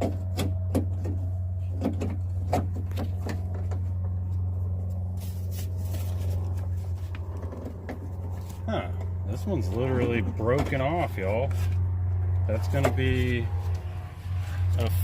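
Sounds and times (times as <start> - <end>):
steady low hum: 0.0 - 15.0
scraping rustle: 2.8 - 8.7.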